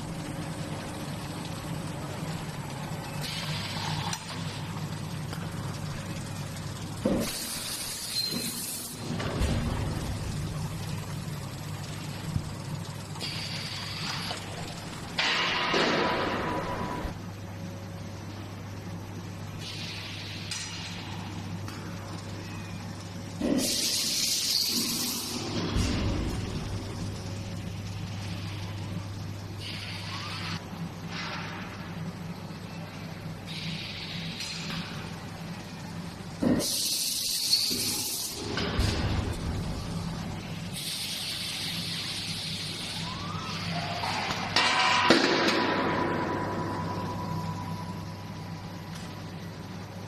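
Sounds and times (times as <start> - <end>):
steady machine hum: 0.0 - 50.0
machinery hissing: 36.4 - 43.7
air hissing: 40.7 - 43.0.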